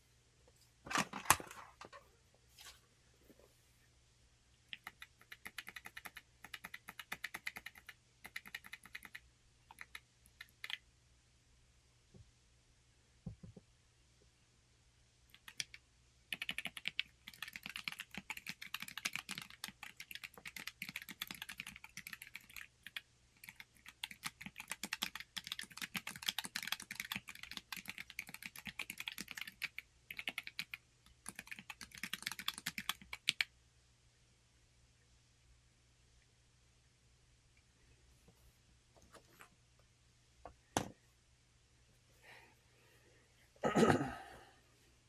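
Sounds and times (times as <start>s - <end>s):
mechanical keyboard typing: 4.7s - 10.8s, 15.4s - 33.5s.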